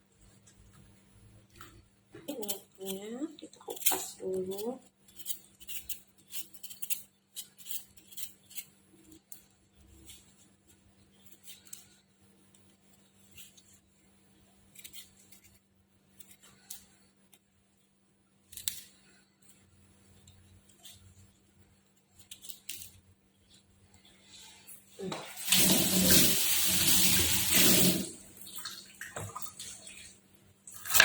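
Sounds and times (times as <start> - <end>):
vegetable peeling scrapes: 3.7 - 10.5, 14.7 - 17.0.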